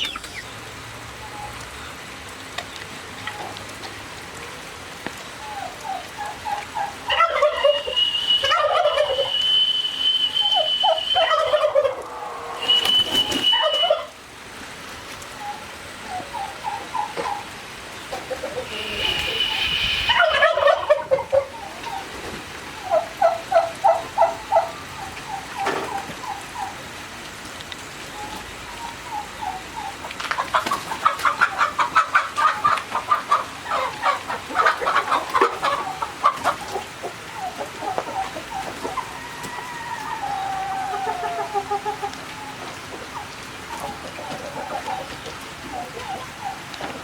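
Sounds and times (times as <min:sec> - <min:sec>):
turkeys gobbling: 0:00.0 - 0:00.5, 0:05.4 - 0:09.6, 0:10.3 - 0:14.2, 0:15.4 - 0:26.8, 0:28.2 - 0:47.0
high-pitched call: 0:07.5 - 0:11.6, 0:18.6 - 0:20.9.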